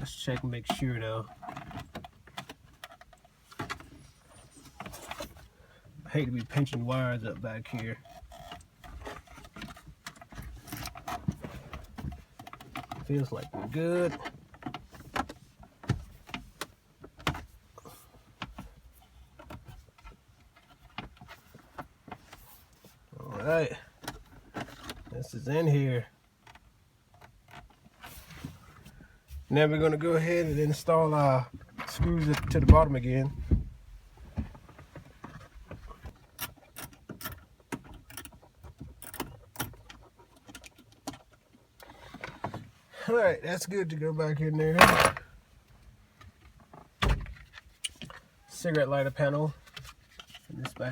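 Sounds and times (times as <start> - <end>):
plastic dash parts clicking and knocking: 0.2 - 4.0, 6.2 - 23.0, 26.2 - 28.0, 31.5 - 42.8, 44.7 - 50.9.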